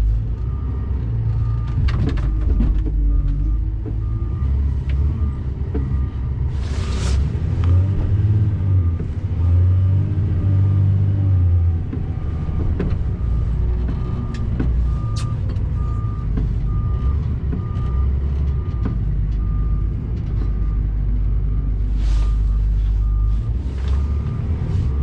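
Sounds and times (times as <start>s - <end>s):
truck engine running: 0.0s - 25.0s
reversing alarm beeping: 0.4s - 6.3s, 12.2s - 25.0s.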